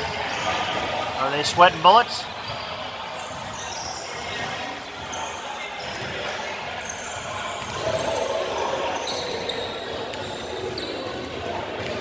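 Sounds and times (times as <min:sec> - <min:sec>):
crowd chatter: 0:00.0 - 0:12.0
sneakers squeaking on court floor: 0:00.4 - 0:08.1.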